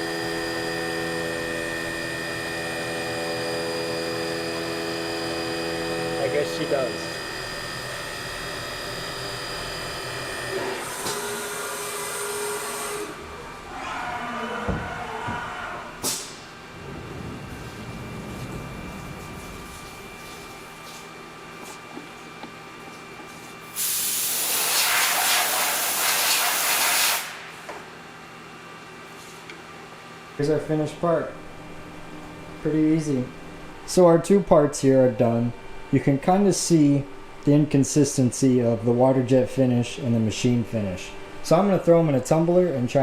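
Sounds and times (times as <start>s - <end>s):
milling machine spindle whine: 0.0s - 13.8s
compressed air hissing: 23.7s - 27.4s.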